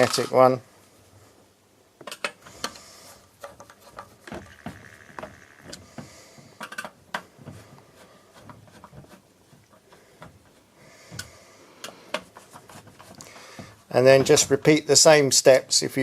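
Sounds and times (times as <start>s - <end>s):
small metal clicks and knocks: 6.6s - 7.3s.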